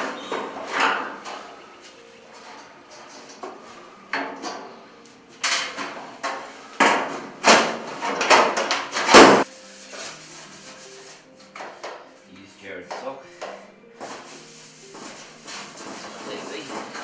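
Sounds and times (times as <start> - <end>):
knocks and clatters of tools: 0.0 - 9.5, 11.5 - 12.2.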